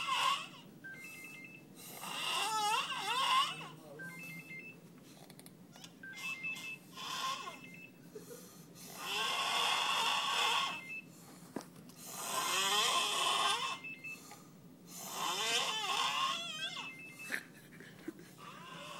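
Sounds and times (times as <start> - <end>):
person snoring heavily: 1.8 - 3.7, 8.9 - 10.9, 12.0 - 13.8, 15.0 - 16.4, 18.4 - 18.9.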